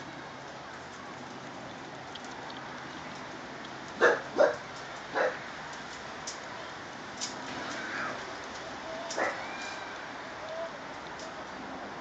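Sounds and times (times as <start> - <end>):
dog barking: 4.0 - 5.4.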